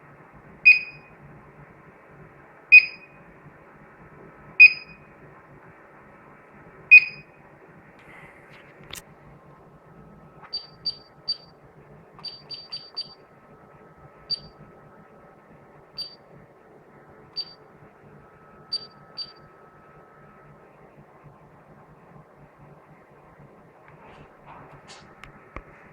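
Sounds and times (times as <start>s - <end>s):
alarm panel short high beeps: 6.9s - 7.3s, 12.2s - 13.2s, 16.0s - 16.2s, 18.7s - 19.4s.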